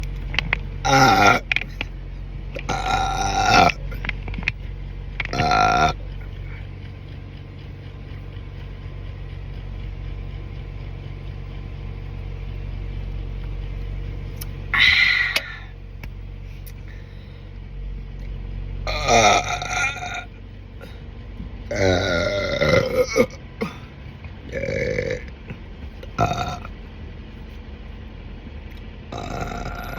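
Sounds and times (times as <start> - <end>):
low background rumble: 0.0 - 29.9
person burping loudly: 0.8 - 1.8, 2.6 - 4.0, 5.3 - 6.0, 14.8 - 15.7, 18.9 - 21.0, 21.7 - 23.9, 24.5 - 25.4, 26.2 - 26.7, 29.1 - 29.9.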